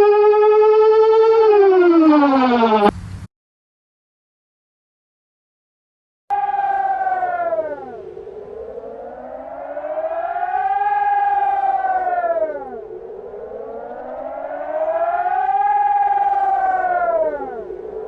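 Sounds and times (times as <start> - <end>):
reversed air raid siren: 0.0 - 2.9, 6.3 - 18.0.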